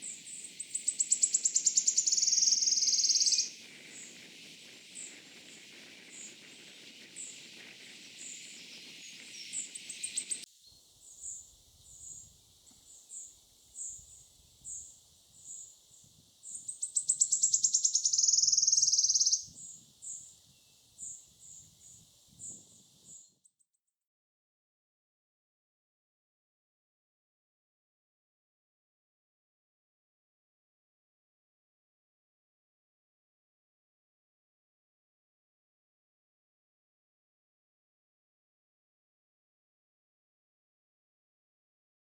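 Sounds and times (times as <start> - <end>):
bird singing trill: 0.0 - 4.2, 8.2 - 23.6.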